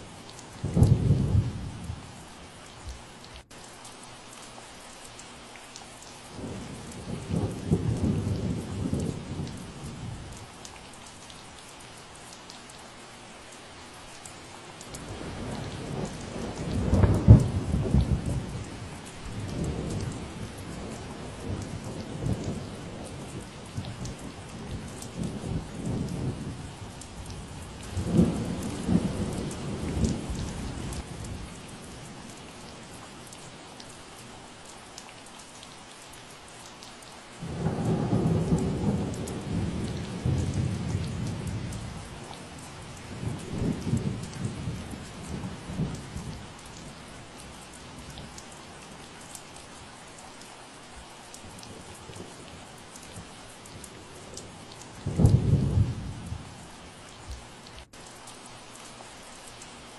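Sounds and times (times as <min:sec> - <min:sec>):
steady rain falling: 0:00.0 - 0:59.9
low thunder rumbling: 0:00.6 - 0:02.2, 0:06.4 - 0:10.4, 0:15.0 - 0:32.5, 0:37.4 - 0:48.5, 0:51.4 - 0:56.7.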